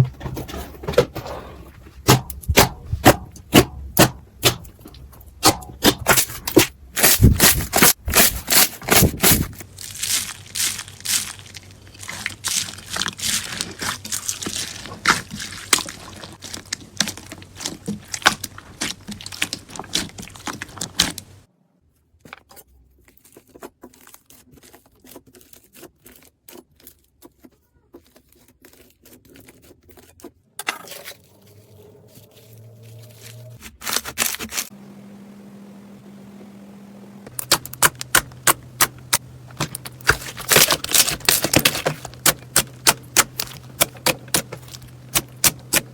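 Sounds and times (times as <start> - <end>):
slime crackling and clicking: 37.3 - 45.9.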